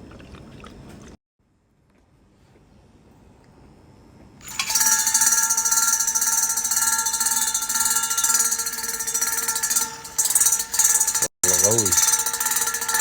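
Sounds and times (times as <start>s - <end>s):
small pump whining: 4.4s - 13.0s.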